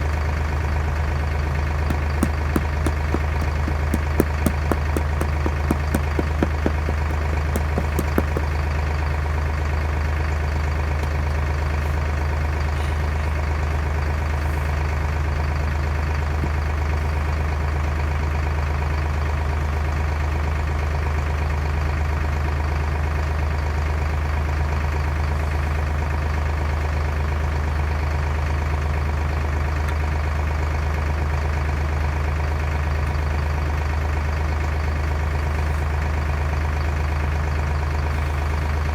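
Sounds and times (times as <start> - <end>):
engine idling: 0.0 - 38.9
sharp knocks: 1.9 - 8.5.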